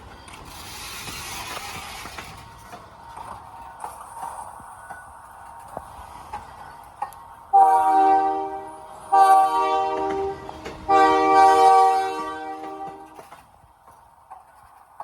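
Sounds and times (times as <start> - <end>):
freight train rumbling past: 0.0 - 15.0
locomotive air horn blasts: 7.6 - 13.2.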